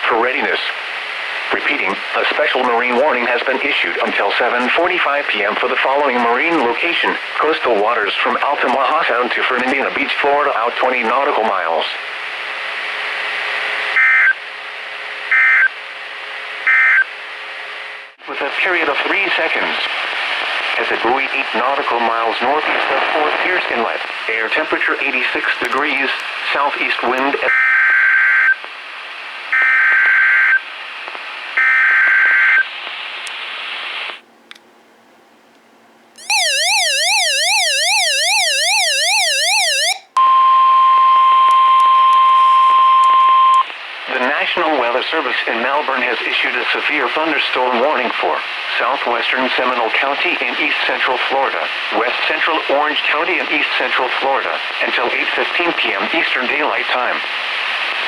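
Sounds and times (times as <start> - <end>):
radio static hiss: 0.0 - 14.0, 17.8 - 34.3, 43.6 - 58.0
shrill two-tone data bursts: 36.2 - 40.1.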